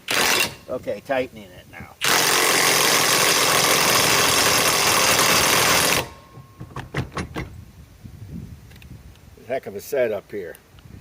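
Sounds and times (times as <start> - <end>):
impact wrench hammering: 2.0 - 7.6
short knocks: 5.3 - 7.6.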